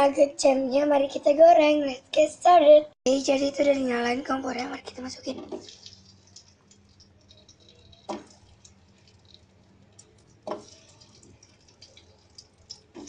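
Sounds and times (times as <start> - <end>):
food frying in oil: 3.1 - 13.0.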